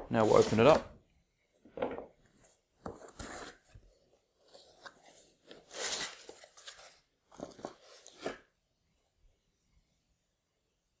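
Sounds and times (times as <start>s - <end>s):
cardboard box scraping: 0.2s - 0.8s.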